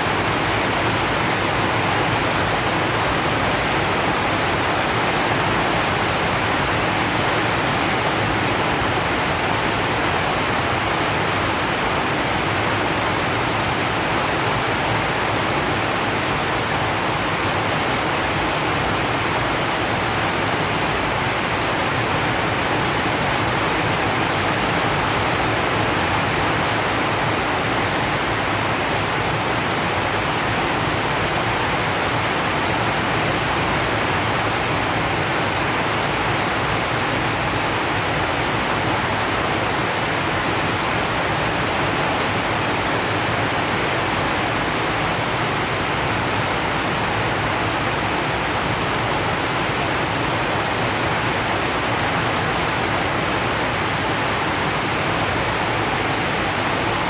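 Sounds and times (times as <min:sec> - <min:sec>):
rain on a metal roof: 0:00.0 - 0:57.0.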